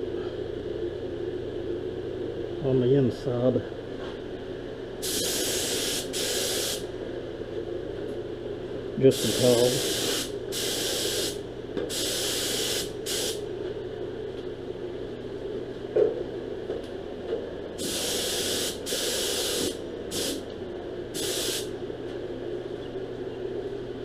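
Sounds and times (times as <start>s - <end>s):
steady low hum: 0.0s - 24.0s
spray gun hissing: 5.0s - 6.8s, 9.1s - 13.4s, 17.8s - 20.4s, 21.2s - 21.7s.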